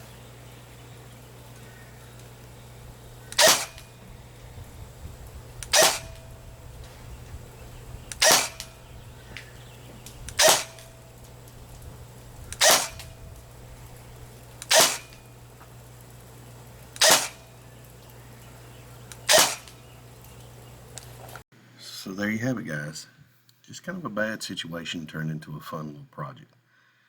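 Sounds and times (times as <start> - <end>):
airsoft rifle shots: 1.5 - 9.2, 10.0 - 15.5, 17.0 - 17.6, 19.1 - 19.8.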